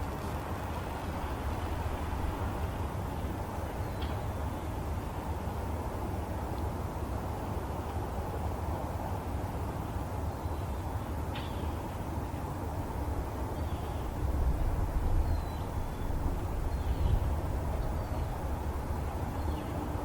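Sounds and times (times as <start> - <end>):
small birds chirping: 13.5 - 14.2, 15.2 - 18.4.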